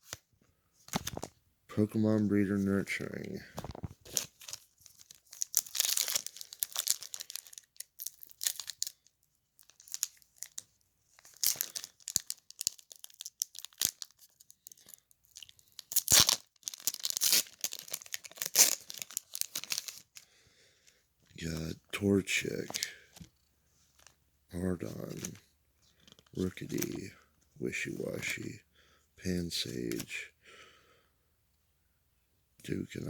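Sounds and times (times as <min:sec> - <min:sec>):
foil wrapper tearing and crinkling: 0:04.1 - 0:20.2.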